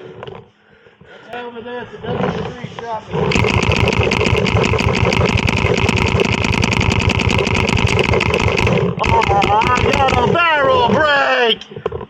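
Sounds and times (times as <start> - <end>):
paintball marker firing rapid shots: 3.3 - 10.9.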